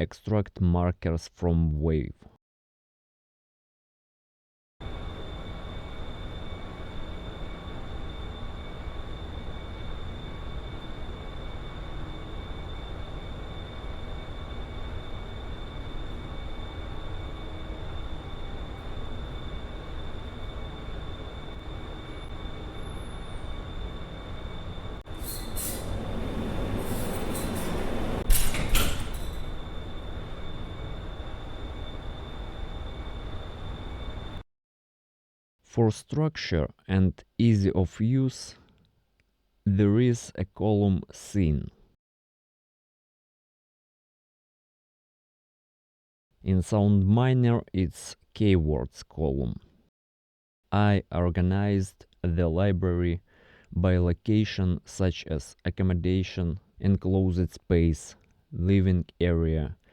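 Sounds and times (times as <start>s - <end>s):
high whine: 4.8s - 34.4s
low machinery rumble: 4.8s - 34.4s.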